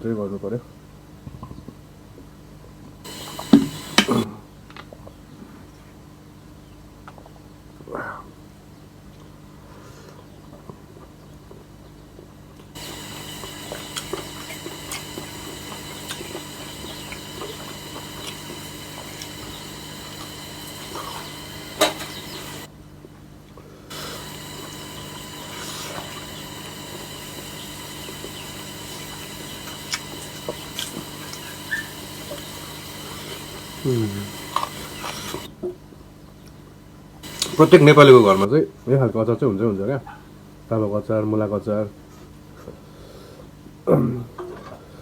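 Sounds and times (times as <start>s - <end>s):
steady background hum: 3.1s - 4.3s, 11.9s - 35.6s, 36.2s - 38.5s
chewing and wet mouth noises: 12.8s - 22.7s, 23.9s - 35.5s.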